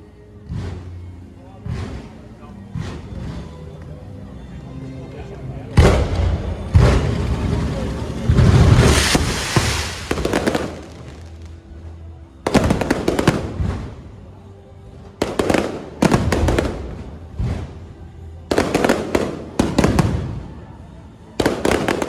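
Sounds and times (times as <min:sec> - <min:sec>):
fireworks bangs: 0:00.4 - 0:03.5, 0:05.7 - 0:11.8, 0:12.4 - 0:14.2, 0:15.2 - 0:17.9, 0:18.5 - 0:20.5, 0:21.4 - 0:22.0.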